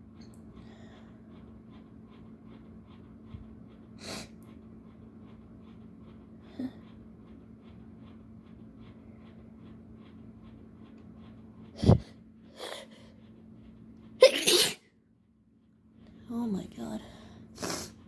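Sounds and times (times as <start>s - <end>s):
person sneezing: 14.2s - 14.8s.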